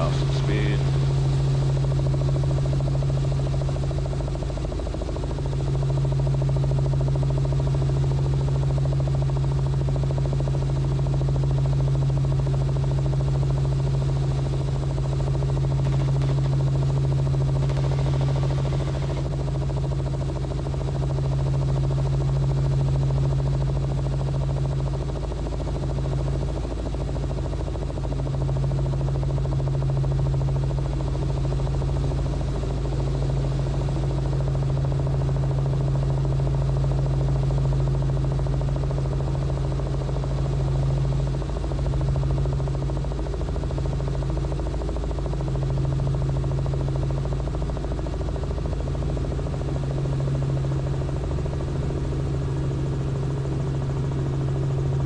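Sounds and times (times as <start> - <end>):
helicopter engine and rotors drone: 0.0 - 55.0.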